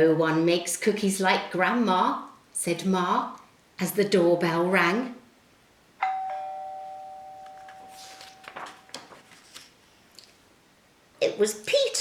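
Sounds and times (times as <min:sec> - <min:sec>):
two-note doorbell chime: 0:06.0 - 0:08.5.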